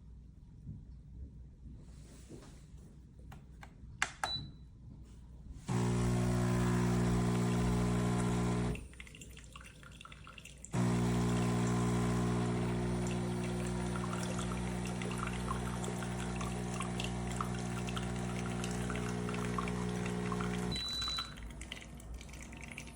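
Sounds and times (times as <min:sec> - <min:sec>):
espresso machine pump buzzing: 0:05.7 - 0:08.8, 0:10.8 - 0:21.0
liquid pouring: 0:05.7 - 0:22.9.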